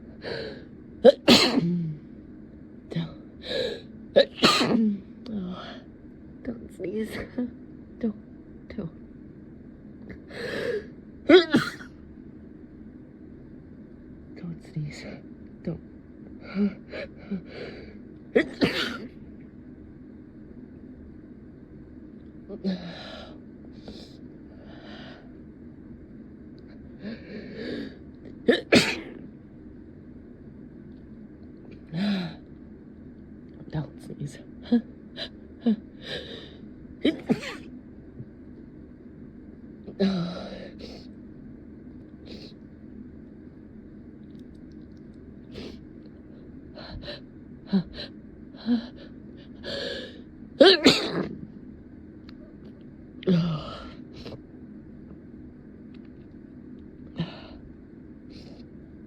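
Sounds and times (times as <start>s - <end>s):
person sneezing: 50.6s - 51.4s.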